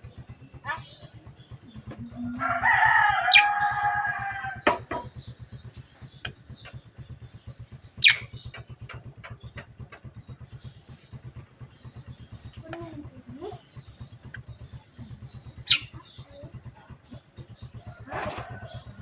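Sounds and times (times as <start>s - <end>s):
bird harsh call: 8.0s - 8.5s, 15.6s - 16.4s.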